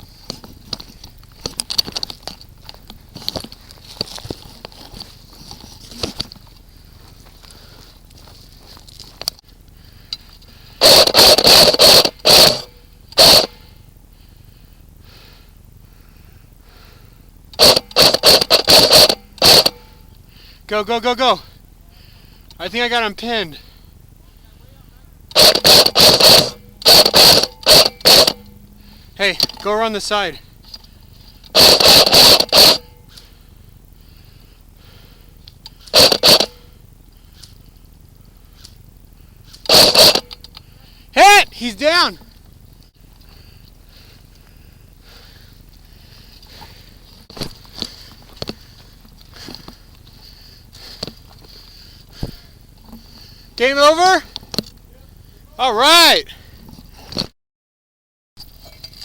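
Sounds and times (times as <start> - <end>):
airsoft rifle firing bursts: 10.8 - 13.6, 17.6 - 19.9, 25.3 - 30.3, 31.5 - 32.9, 35.9 - 36.7, 39.7 - 40.4.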